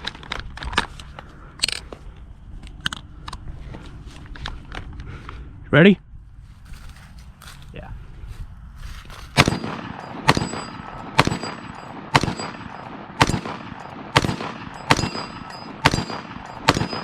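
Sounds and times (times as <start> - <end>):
rifle shots: 9.3 - 17.0
metallic ring: 9.5 - 13.0, 13.7 - 17.0.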